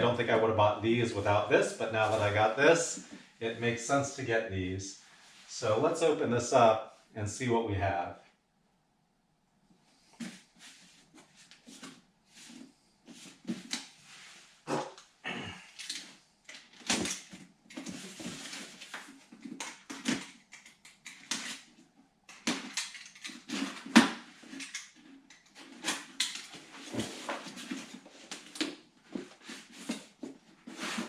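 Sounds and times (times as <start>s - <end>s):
paper rustling and crinkling: 15.8s - 20.4s, 22.4s - 31.0s.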